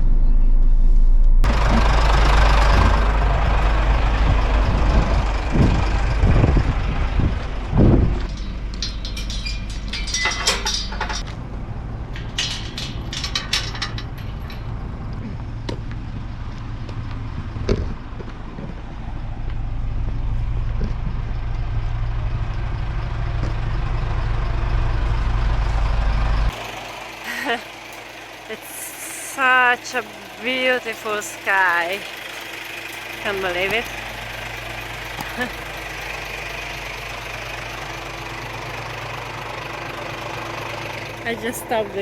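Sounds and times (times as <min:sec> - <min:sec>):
lorry engine rumbling: 0:00.0 - 0:42.0
sharp rattling clicks: 0:07.6 - 0:15.2.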